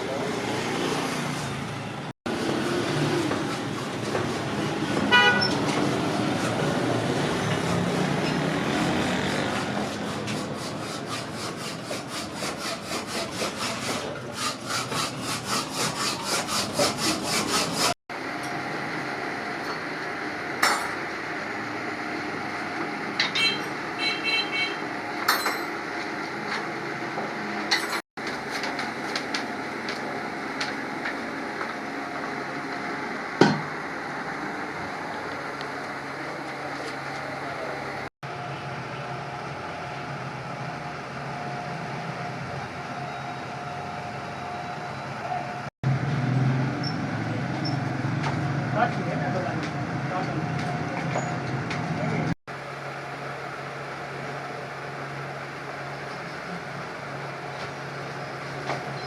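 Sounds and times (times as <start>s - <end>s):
hand tool scraping back and forth: 5.5s - 18.0s.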